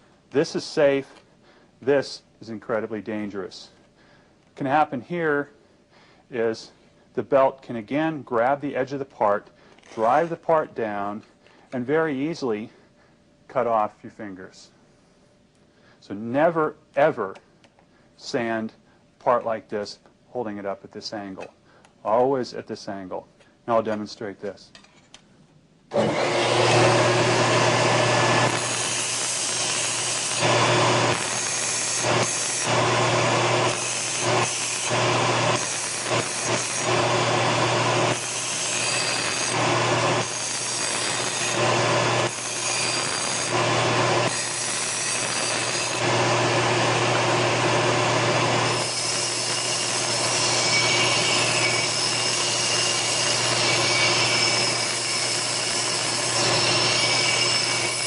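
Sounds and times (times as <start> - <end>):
belt sander running: 25.9 - 58.0.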